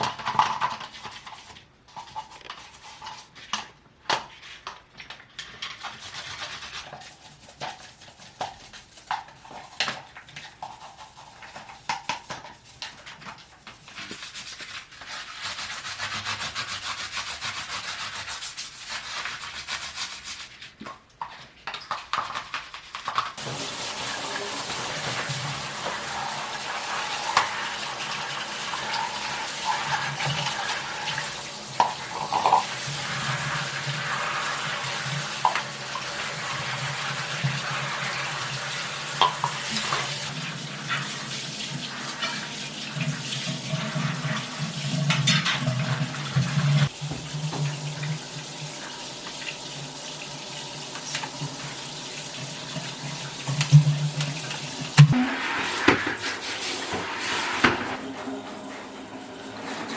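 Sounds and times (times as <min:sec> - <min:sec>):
tap water running into sink: 0:23.0 - 0:59.9.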